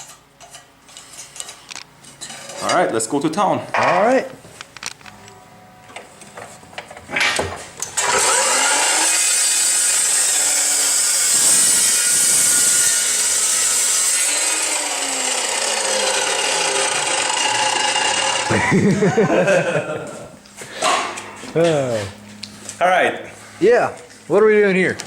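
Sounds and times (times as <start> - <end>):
power saw cutting steel tubing: 8.0 - 18.6.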